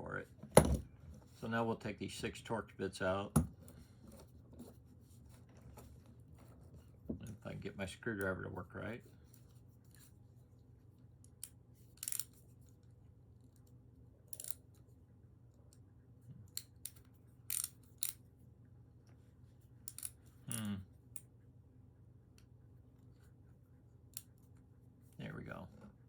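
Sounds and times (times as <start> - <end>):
screwdriver clicking on small screws: 11.2 - 12.4, 14.3 - 14.6, 16.5 - 18.2, 19.9 - 20.6.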